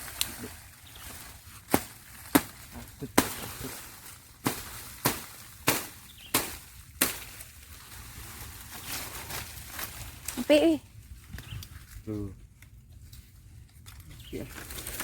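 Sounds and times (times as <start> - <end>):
sharp hard blows: 4.4 - 7.4.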